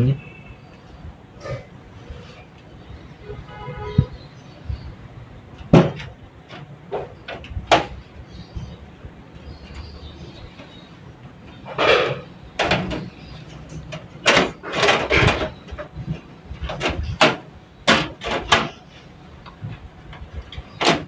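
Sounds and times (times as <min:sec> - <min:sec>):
knocks and scrapes on metal case: 0:05.6 - 0:08.7, 0:11.5 - 0:21.0.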